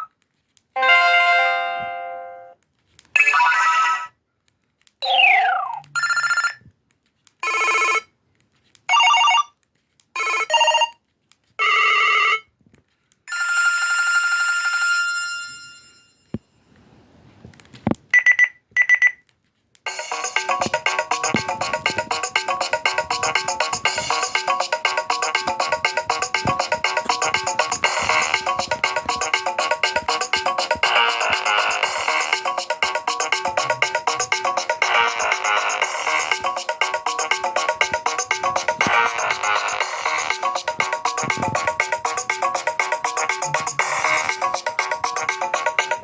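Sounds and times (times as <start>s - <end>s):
rhythmic ringtone melody: 19.9s - 46.0s.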